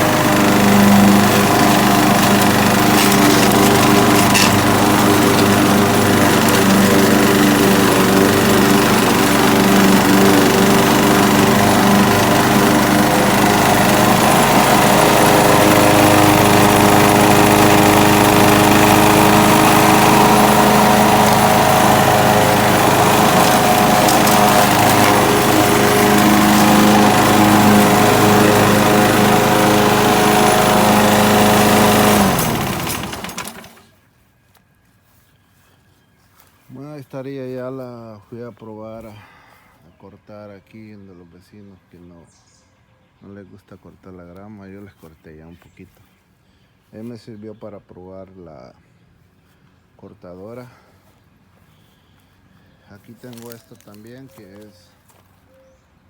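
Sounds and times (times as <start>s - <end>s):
lawnmower engine running: 0.0s - 34.0s.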